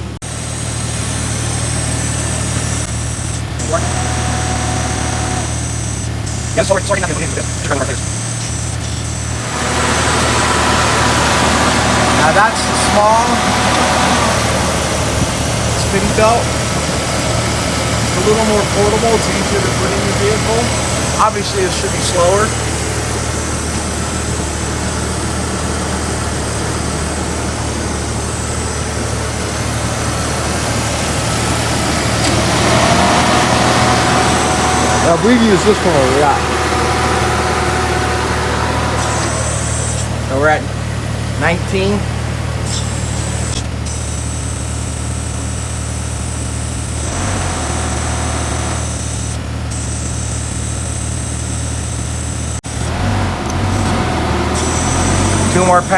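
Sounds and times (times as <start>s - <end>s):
vehicle engine idling: 0.0s - 55.9s.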